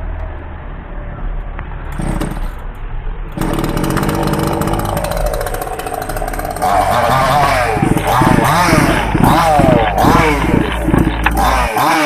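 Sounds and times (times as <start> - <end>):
two-stroke chainsaw engine running: 2.0 - 2.5, 3.4 - 12.0.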